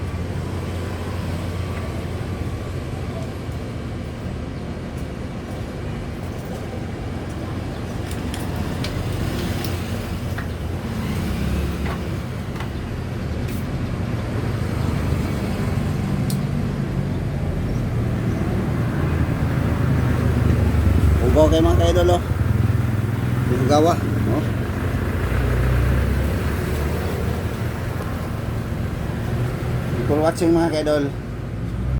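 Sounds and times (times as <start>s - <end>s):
vehicle engine running: 14.0s - 29.6s.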